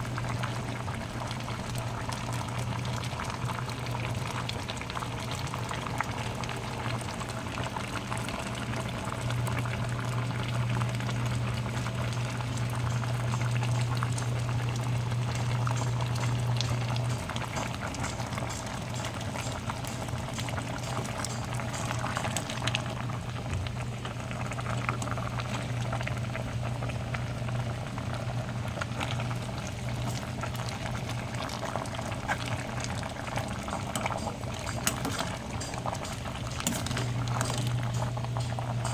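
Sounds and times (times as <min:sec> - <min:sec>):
stew bubbling and popping: 0:00.0 - 0:38.9
steady low hum: 0:09.5 - 0:38.9.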